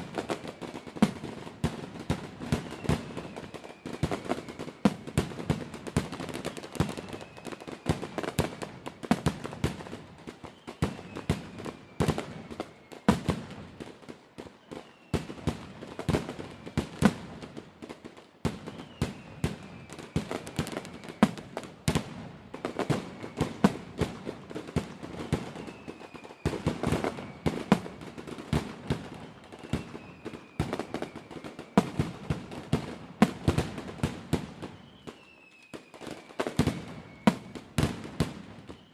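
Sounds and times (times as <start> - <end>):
fireworks banging and cracking: 0.0 - 38.9
faint falling whistle: 2.5 - 5.2, 6.4 - 8.8, 10.4 - 13.1, 14.4 - 15.6, 18.6 - 21.6, 22.6 - 24.0, 25.2 - 28.0, 29.2 - 32.1, 34.6 - 38.9.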